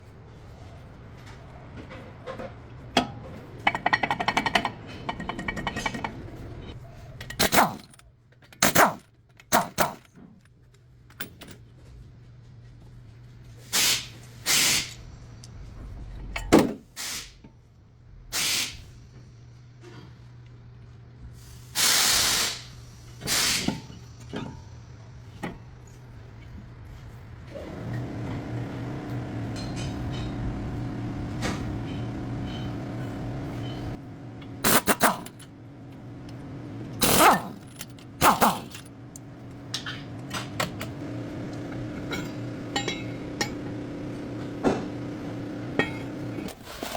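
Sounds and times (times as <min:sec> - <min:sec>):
hissing spray bursts: 0:21.6 - 0:23.8
machine running: 0:27.5 - 0:46.9.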